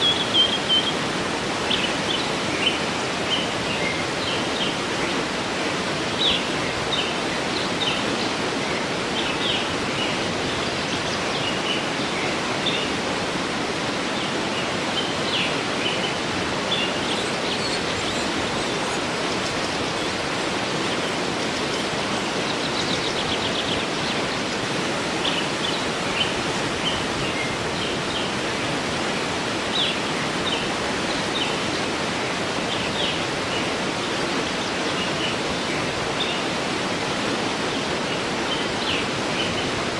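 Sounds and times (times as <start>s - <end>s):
waterfall rushing: 0.0s - 39.9s
small birds chirping: 14.6s - 28.0s.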